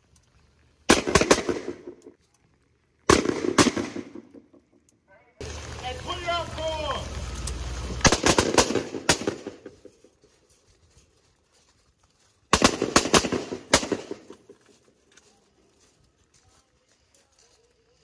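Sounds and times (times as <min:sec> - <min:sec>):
gunshot echoes: 0:00.9 - 0:02.0, 0:03.1 - 0:04.3, 0:08.0 - 0:09.8, 0:12.5 - 0:14.3
rifle gunshots: 0:00.9 - 0:02.0, 0:03.1 - 0:04.5, 0:08.0 - 0:09.8, 0:12.5 - 0:14.4.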